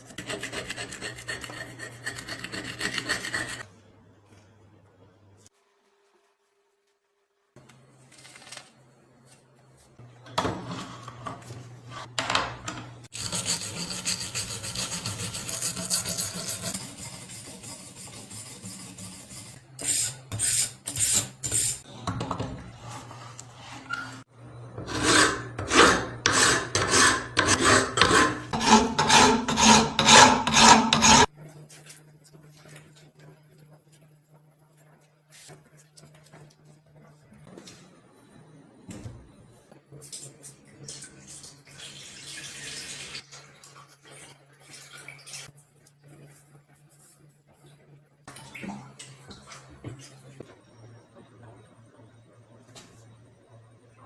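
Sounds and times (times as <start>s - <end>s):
hand tool scraping back and forth: 0.0s - 3.7s, 13.1s - 21.9s, 22.8s - 31.3s.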